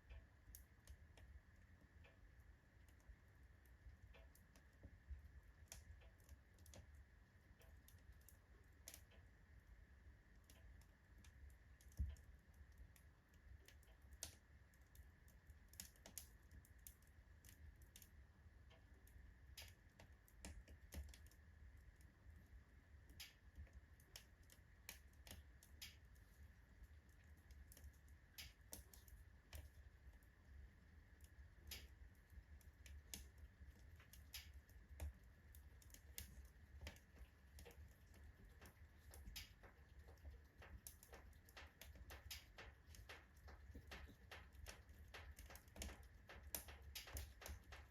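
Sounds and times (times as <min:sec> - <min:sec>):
logs crackling and popping in fire: 0:10.3 - 0:47.9.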